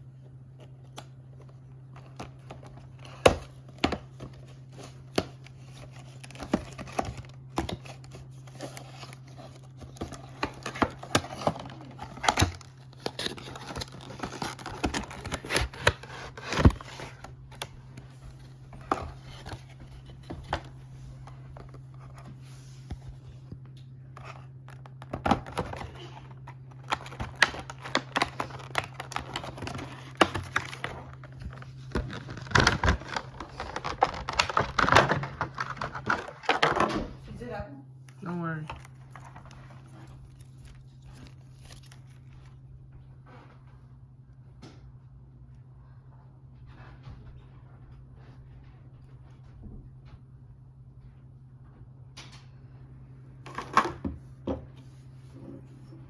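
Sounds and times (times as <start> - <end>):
low steady hum: 0.0 - 56.0
packaging tearing and crinkling: 2.1 - 17.7, 24.7 - 36.8.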